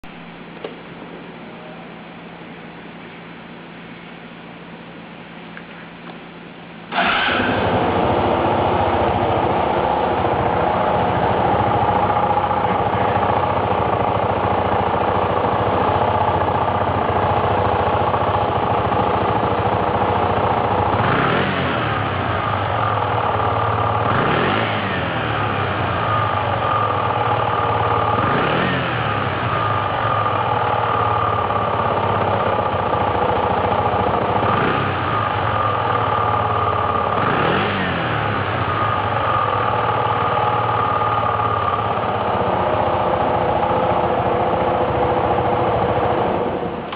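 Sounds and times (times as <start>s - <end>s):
scooter engine starting and idling: 6.0s - 46.9s.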